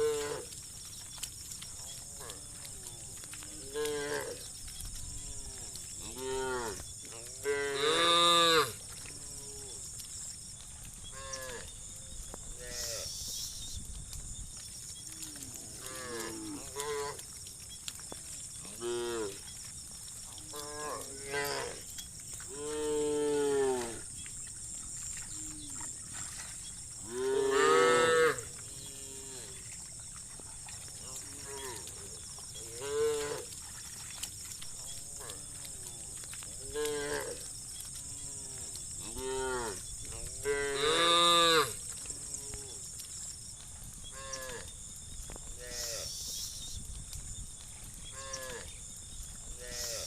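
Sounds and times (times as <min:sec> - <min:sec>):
cows mooing: 0:03.2 - 0:04.4, 0:05.2 - 0:09.8, 0:15.2 - 0:17.2, 0:20.5 - 0:21.8, 0:27.0 - 0:29.6, 0:38.1 - 0:42.8.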